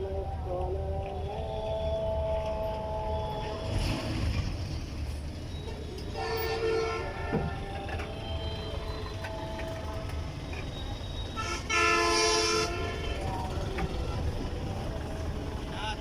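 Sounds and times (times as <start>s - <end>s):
road traffic rumbling: 0.0s - 16.0s
vehicle horns: 6.0s - 10.0s, 10.6s - 14.0s.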